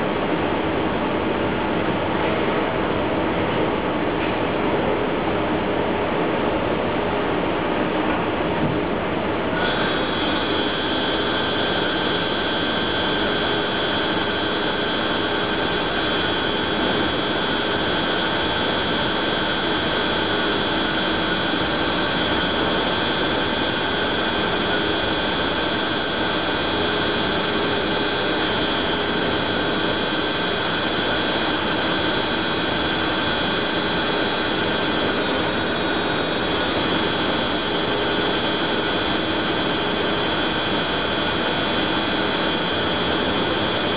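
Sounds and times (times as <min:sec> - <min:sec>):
machine noise: 0:09.4 - 0:43.9
lathe whining: 0:09.5 - 0:43.9.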